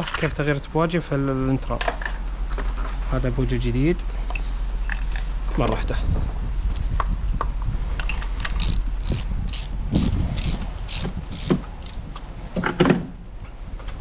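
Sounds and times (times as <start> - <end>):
ratchet wrench clicking: 8.0 - 12.2.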